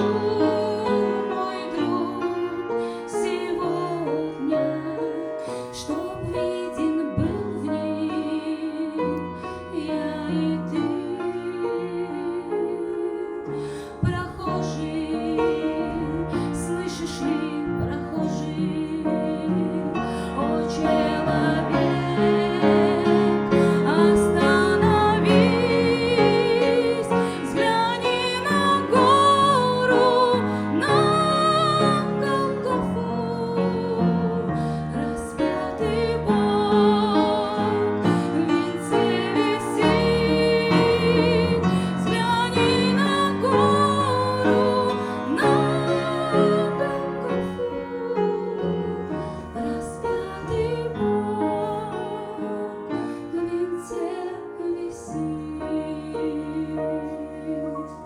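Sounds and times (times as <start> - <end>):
keyboard accompaniment: 0.0 - 58.0
woman singing with vibrato: 23.7 - 52.8.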